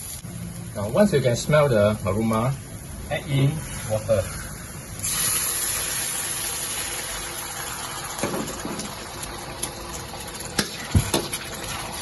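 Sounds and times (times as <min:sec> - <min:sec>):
water hissing in a hot wok: 0:00.0 - 0:12.0.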